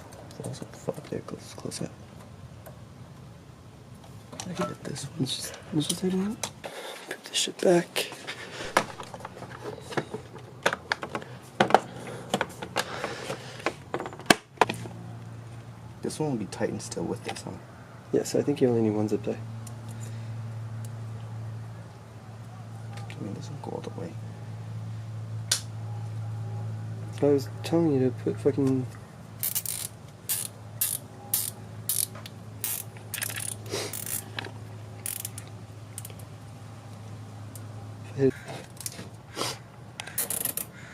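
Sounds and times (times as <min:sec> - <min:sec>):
steady low hum: 0:00.0 - 0:40.9
metal parts and tools clicking: 0:29.4 - 0:36.3, 0:40.0 - 0:40.7.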